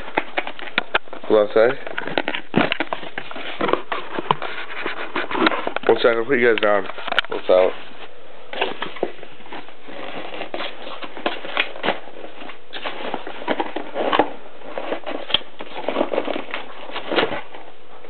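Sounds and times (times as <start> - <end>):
packaging rustling and clicking: 0.0 - 7.7, 8.5 - 17.7
steady low hiss: 0.0 - 18.0.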